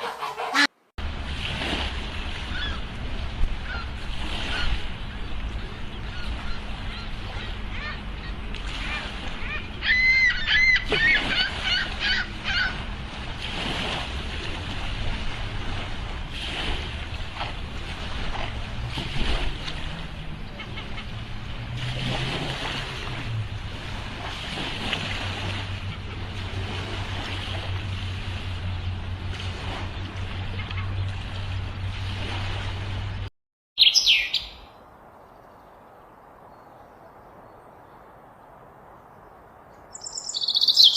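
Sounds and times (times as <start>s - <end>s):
high animal calls: 0.0s - 0.7s
water noise: 0.0s - 40.9s
low motor hum: 1.0s - 33.3s.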